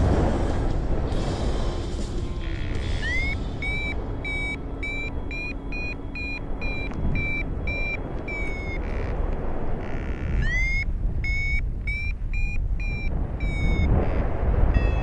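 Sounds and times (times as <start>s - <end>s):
low wind rumble on microphone: 0.0s - 15.0s
variometer high beeps: 2.4s - 9.3s, 10.0s - 15.0s.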